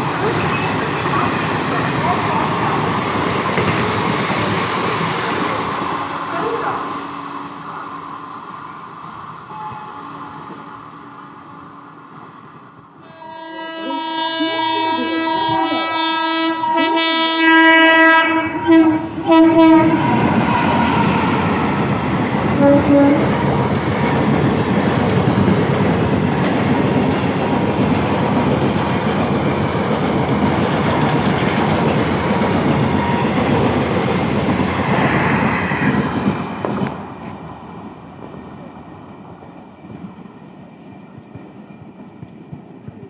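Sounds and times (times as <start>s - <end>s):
train passing at speed: 0.0s - 43.0s
locomotive horn: 13.0s - 21.4s, 22.6s - 23.3s.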